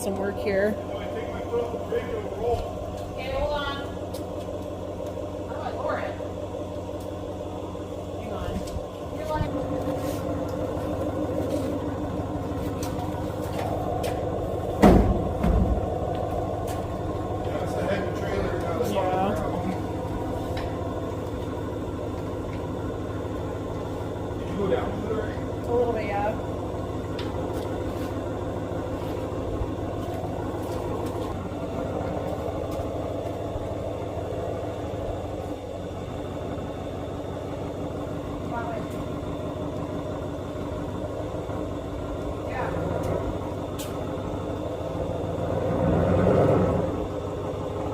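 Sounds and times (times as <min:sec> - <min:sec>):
vehicle engine idling: 0:00.0 - 0:47.9
trailer clunking onto hitch: 0:11.4 - 0:19.0.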